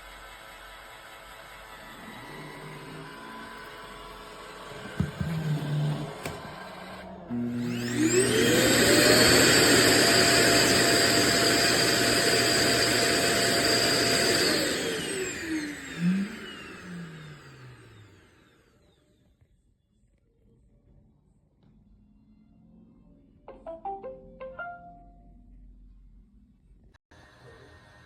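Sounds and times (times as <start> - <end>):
vacuum suction motor whine: 0.0 - 19.1.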